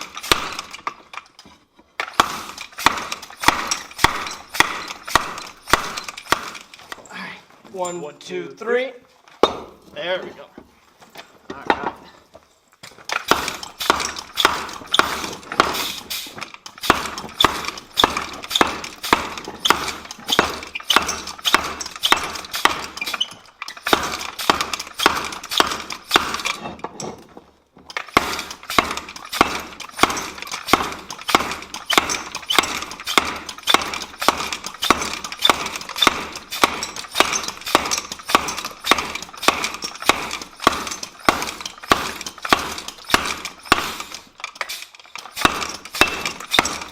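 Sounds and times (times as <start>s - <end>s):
hammer striking steel: 2.1s - 6.7s, 9.4s - 9.8s, 13.2s - 16.0s, 16.8s - 26.6s, 28.1s - 46.9s.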